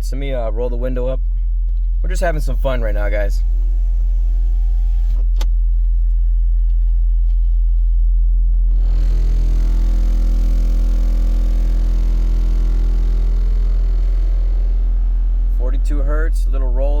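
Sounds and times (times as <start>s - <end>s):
subwoofer low test tone: 0.0s - 17.0s
buzzing rattle: 1.6s - 5.4s, 8.5s - 17.0s
click: 5.1s - 5.5s.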